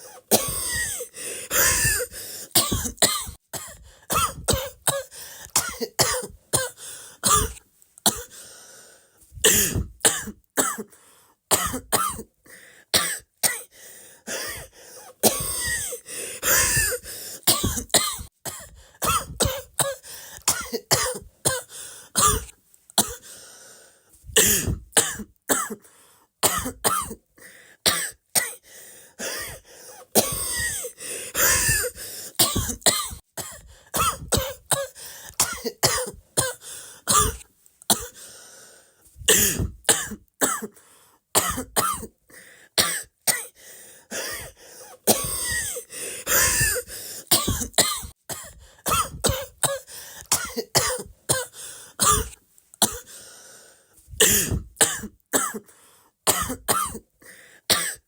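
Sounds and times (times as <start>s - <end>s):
person coughing: 0.0s - 8.4s, 9.4s - 10.9s, 11.5s - 12.3s, 14.3s - 23.3s, 24.3s - 25.8s, 26.4s - 27.2s, 29.2s - 38.2s, 39.2s - 40.8s, 41.4s - 42.2s, 42.8s - 53.2s, 54.2s - 55.7s, 56.3s - 57.1s, 57.7s - 58.0s.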